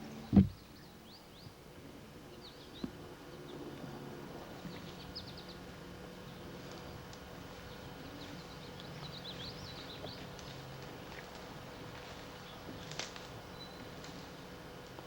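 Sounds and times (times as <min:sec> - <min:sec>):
faint low hum: 0:00.0 - 0:15.0
small birds chirping: 0:00.1 - 0:01.6, 0:02.2 - 0:14.6
loud thump: 0:00.3 - 0:00.6.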